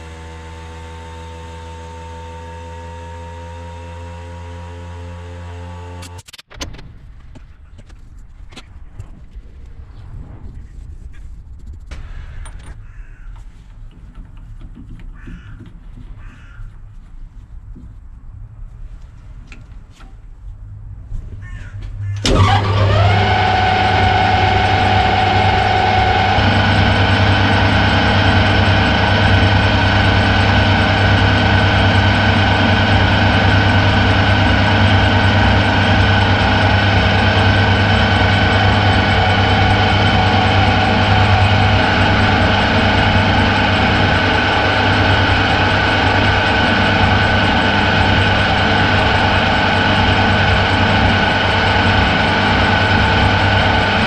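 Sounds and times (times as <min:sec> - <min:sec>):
metal lathe motor humming: 0:00.0 - 0:06.1, 0:22.2 - 0:54.0.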